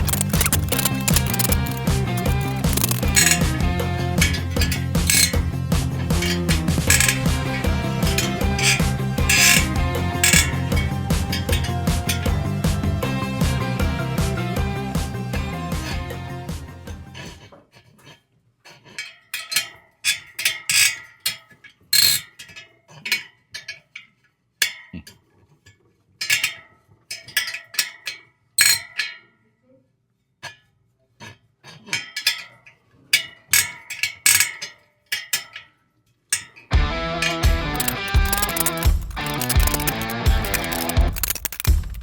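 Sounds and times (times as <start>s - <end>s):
spoke wrench metallic clicks: 0.0s - 5.4s, 6.0s - 12.3s, 22.0s - 22.2s, 28.6s - 28.8s, 37.2s - 42.0s.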